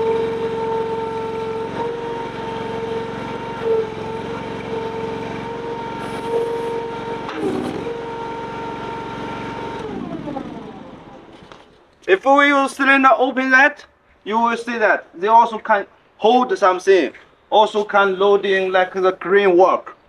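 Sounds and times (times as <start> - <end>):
small engine whining: 0.0 - 12.0.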